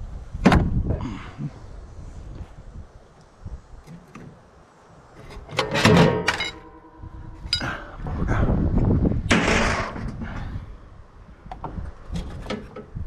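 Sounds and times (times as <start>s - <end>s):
metal parts clattering and clanking: 5.2s - 7.7s
metal rattling and scraping: 5.2s - 7.7s, 9.3s - 10.3s
metal piece ringing: 5.6s - 7.7s.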